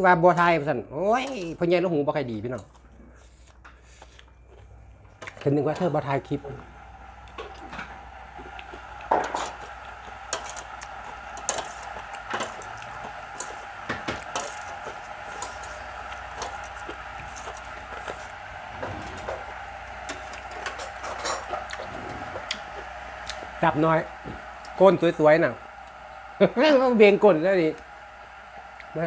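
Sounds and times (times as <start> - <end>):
cutlery clinking on plates: 8.6 - 18.2, 20.1 - 21.8.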